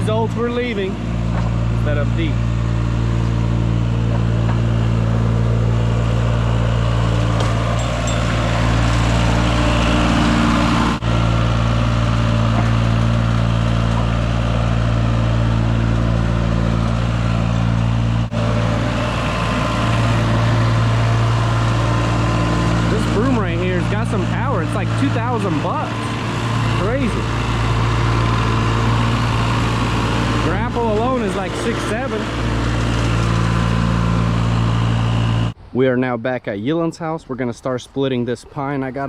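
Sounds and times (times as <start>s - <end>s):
loader engine running: 0.0s - 35.6s
power broom rushing: 16.8s - 35.5s.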